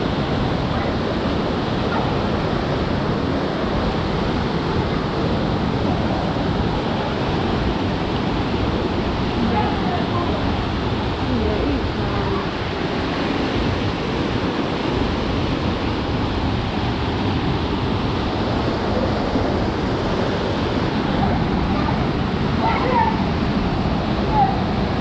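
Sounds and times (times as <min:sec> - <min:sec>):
running water rushing: 0:00.0 - 0:25.0.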